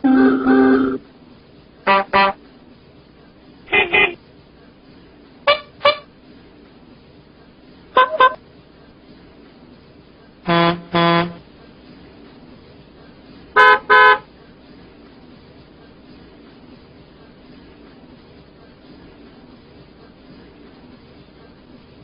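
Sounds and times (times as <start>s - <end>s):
musical bus air horn toots: 0.0s - 1.0s, 1.8s - 2.4s, 3.7s - 4.2s, 5.5s - 6.1s, 8.0s - 8.4s, 10.5s - 11.4s, 13.6s - 14.3s.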